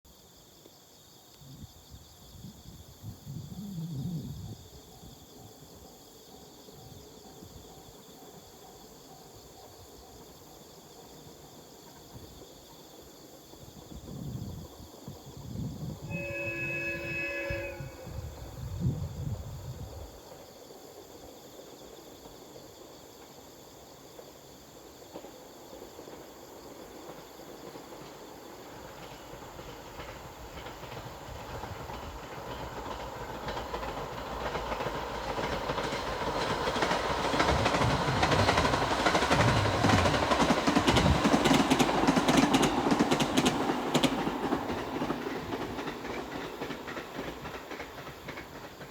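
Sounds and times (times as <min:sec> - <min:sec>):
electric train passing: 0:05.7 - 0:48.9
wheels clicking over rail joints: 0:27.0 - 0:48.9.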